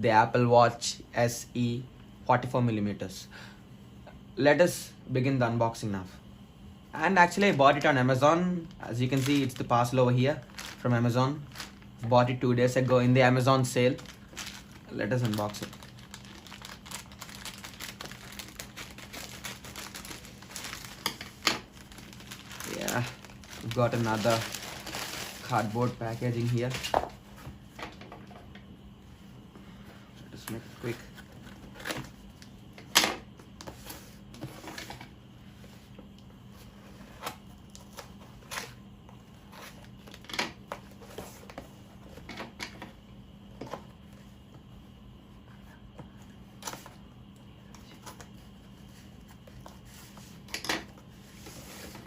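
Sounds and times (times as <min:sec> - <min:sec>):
parcel packaging tearing and crinkling: 0:09.0 - 0:09.7, 0:10.4 - 0:11.8, 0:13.9 - 0:27.0.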